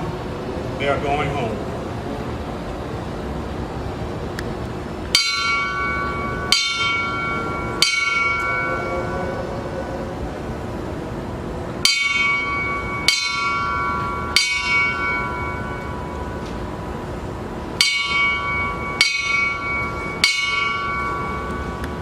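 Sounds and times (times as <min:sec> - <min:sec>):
bell struck and ringing: 0:05.1 - 0:09.6, 0:11.8 - 0:16.5, 0:17.8 - 0:22.0.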